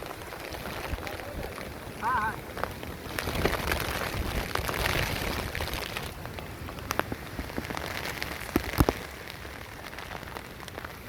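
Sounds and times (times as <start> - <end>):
raindrops ticking: 0.0 - 11.0
steady rain falling: 0.0 - 11.0.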